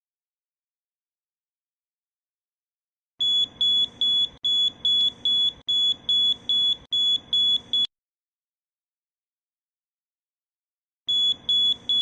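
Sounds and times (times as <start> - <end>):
high-pitched alarm beeps: 3.2 - 7.9, 11.1 - 12.0.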